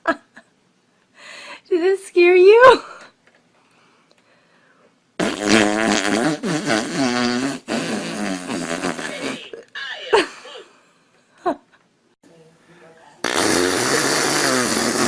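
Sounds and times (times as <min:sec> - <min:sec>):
long wavering fart: 0:05.2 - 0:09.5, 0:13.2 - 0:15.0.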